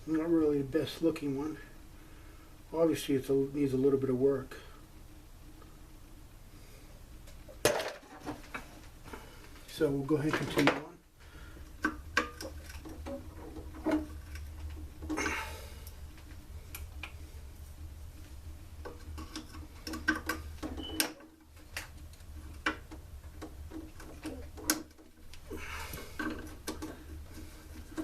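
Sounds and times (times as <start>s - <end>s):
steady low hum: 8.2s - 28.0s
hand tools and parts clicking: 18.8s - 28.0s.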